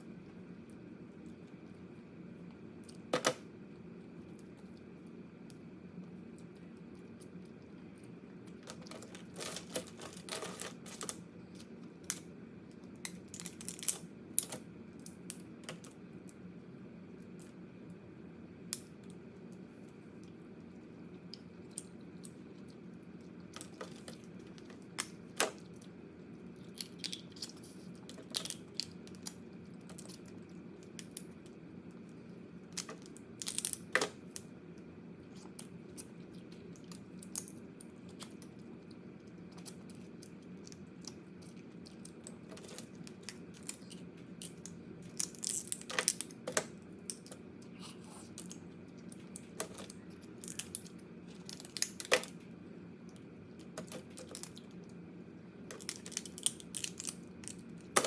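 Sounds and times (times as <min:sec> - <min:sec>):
crab shells cracking: 0:08.6 - 0:12.3, 0:12.9 - 0:16.4, 0:26.6 - 0:31.4, 0:32.7 - 0:34.5, 0:35.4 - 0:47.5, 0:48.3 - 0:52.4, 0:55.7 - 0:58.0.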